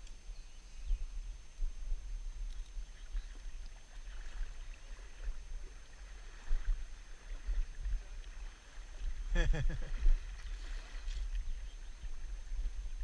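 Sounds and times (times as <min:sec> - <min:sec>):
river water lapping: 0:02.4 - 0:13.0.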